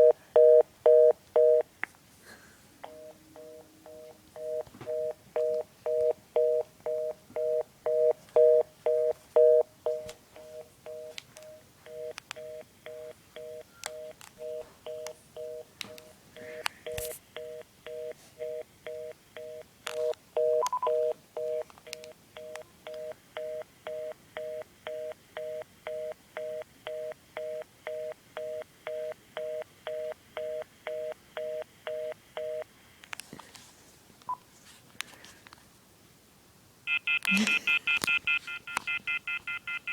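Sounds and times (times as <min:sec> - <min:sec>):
telephone busy signal beeping: 0:00.0 - 0:01.6, 0:02.8 - 0:15.7, 0:16.4 - 0:21.6, 0:22.4 - 0:32.7, 0:36.9 - 0:39.9
faint clicks: 0:21.6 - 0:23.1.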